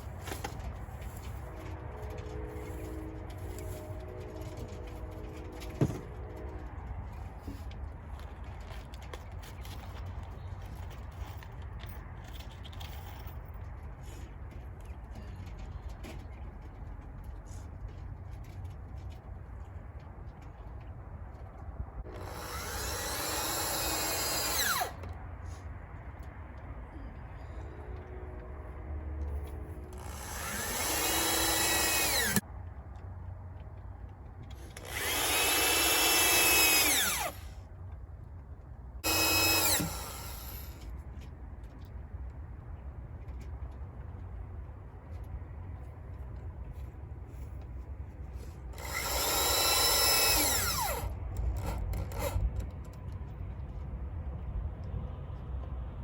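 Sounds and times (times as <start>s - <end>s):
power drill running: 22.1s - 25.0s, 30.0s - 32.4s, 34.8s - 37.5s, 39.0s - 40.8s, 48.8s - 52.4s.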